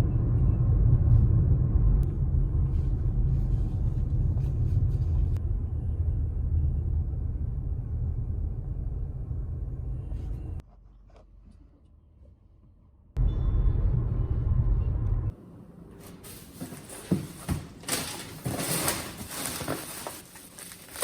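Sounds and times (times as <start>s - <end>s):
road rumble inside a car: 0.0s - 10.7s, 13.1s - 15.4s.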